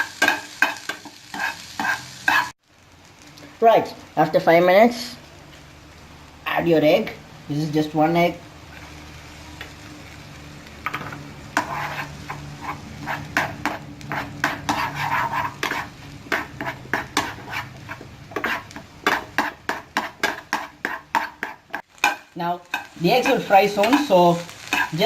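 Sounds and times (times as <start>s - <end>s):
utensil scraping a frying pan: 0.0s - 2.6s, 10.8s - 25.0s
food sizzling in a pan: 0.0s - 25.0s.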